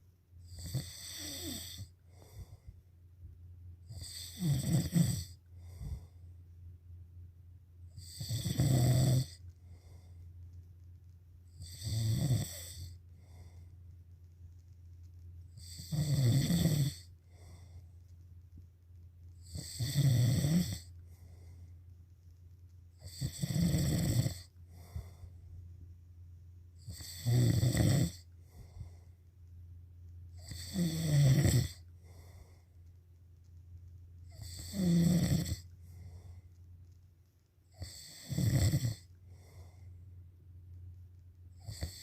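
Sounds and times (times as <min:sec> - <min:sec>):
soft breaths: 0:00.0 - 0:04.5, 0:05.2 - 0:07.0, 0:07.7 - 0:27.3, 0:28.0 - 0:42.0
person snoring: 0:00.5 - 0:02.6, 0:03.9 - 0:06.1, 0:07.9 - 0:10.0, 0:11.5 - 0:13.6, 0:15.6 - 0:17.6, 0:19.4 - 0:20.9, 0:23.0 - 0:25.3, 0:26.8 - 0:29.0, 0:30.4 - 0:32.5, 0:34.3 - 0:36.2, 0:37.7 - 0:39.8, 0:41.6 - 0:42.0.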